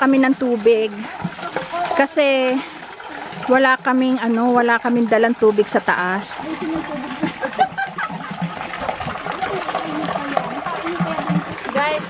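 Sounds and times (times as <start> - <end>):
water running and trickling: 0.0 - 12.0
indistinct voices: 6.0 - 7.6, 8.9 - 12.0.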